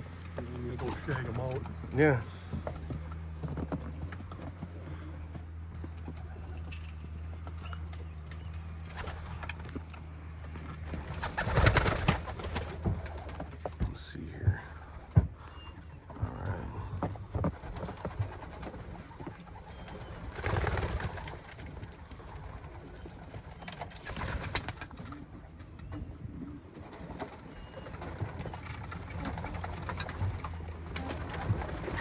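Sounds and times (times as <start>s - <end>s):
pigeons cooing: 7.8s - 32.0s.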